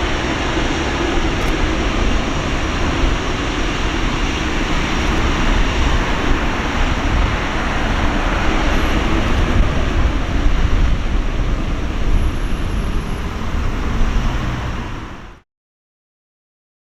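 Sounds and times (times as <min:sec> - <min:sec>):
jet engines rumbling: 0:00.0 - 0:15.4.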